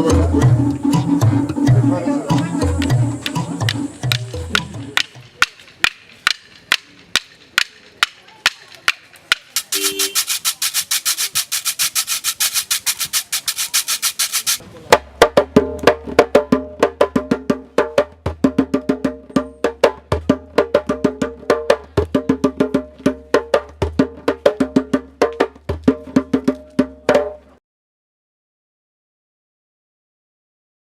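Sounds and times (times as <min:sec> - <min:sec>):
wooden percussion rhythm: 0:00.0 - 0:27.6
fast scraping rattle: 0:09.4 - 0:14.6.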